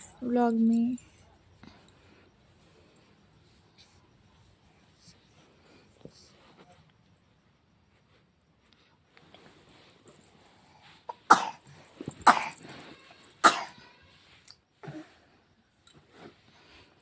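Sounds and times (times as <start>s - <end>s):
person coughing: 11.3s - 12.6s, 13.4s - 13.8s.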